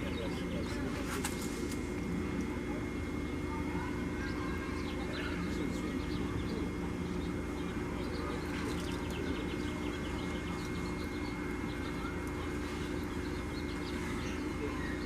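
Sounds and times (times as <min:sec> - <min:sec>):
steady mechanical hum: 0:00.0 - 0:15.0
small birds chirping: 0:03.2 - 0:15.0.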